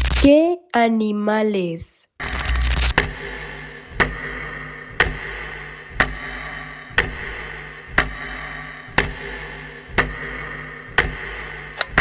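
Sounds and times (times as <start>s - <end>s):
clock ticking: 2.9s - 12.0s.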